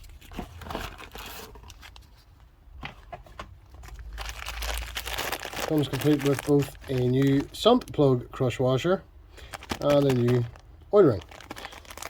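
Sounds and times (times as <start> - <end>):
packaging rustling: 0.0 - 2.4, 3.0 - 8.0, 9.4 - 12.0
packaging clicks: 9.5 - 12.0.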